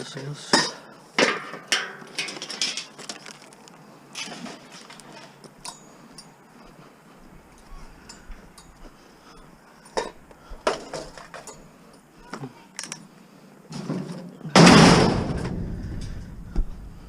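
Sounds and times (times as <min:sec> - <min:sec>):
heavy metal crash with rattling: 0:14.6 - 0:16.4.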